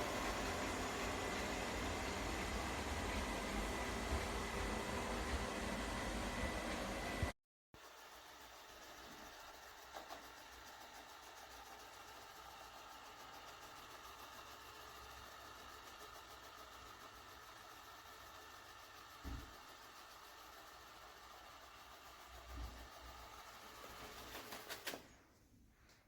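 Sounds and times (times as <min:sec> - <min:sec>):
robot vacuum motor hum: 0:00.0 - 0:07.3.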